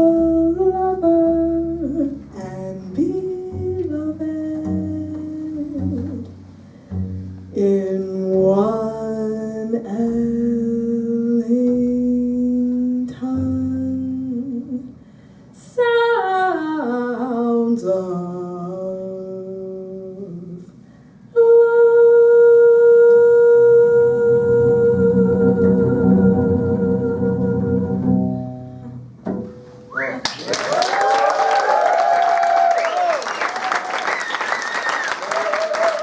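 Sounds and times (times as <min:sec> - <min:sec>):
person humming a melody: 0:00.0 - 0:06.3, 0:07.6 - 0:15.0, 0:21.4 - 0:28.9
double bass: 0:00.0 - 0:30.3.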